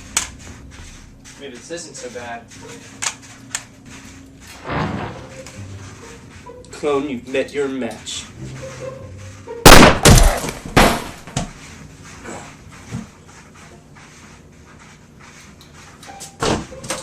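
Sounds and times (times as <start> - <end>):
loud thumps or crashes: 4.6 - 5.4, 9.7 - 11.4.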